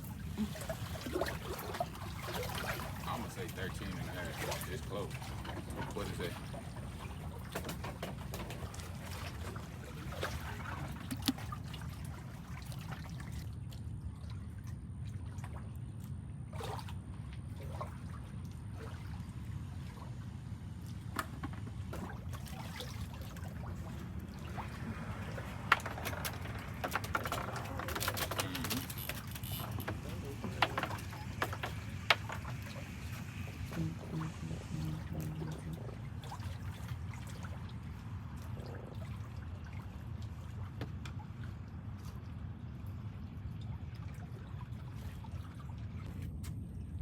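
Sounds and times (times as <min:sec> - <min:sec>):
water trickling and lapping: 0:00.0 - 0:47.0
steady low rumble: 0:13.3 - 0:40.6.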